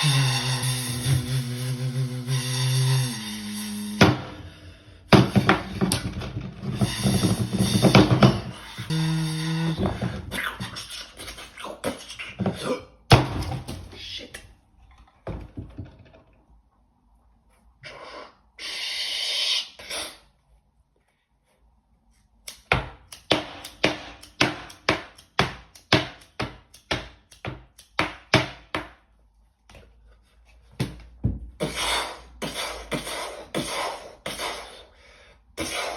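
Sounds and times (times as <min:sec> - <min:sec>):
person beatboxing: 0:00.0 - 0:04.4, 0:06.8 - 0:12.9, 0:31.6 - 0:34.9, 0:35.6 - 0:35.9.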